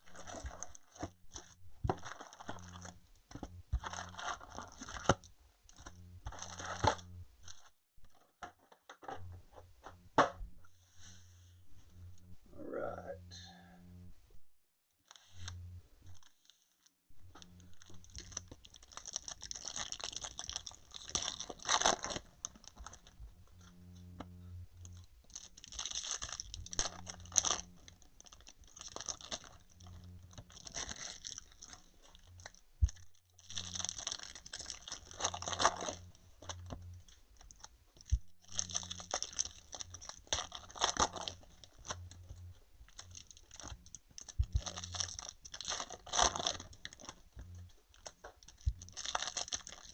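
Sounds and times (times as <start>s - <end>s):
foil wrappers tearing and crinkling: 0.0s - 7.7s, 17.4s - 23.2s, 24.8s - 49.9s.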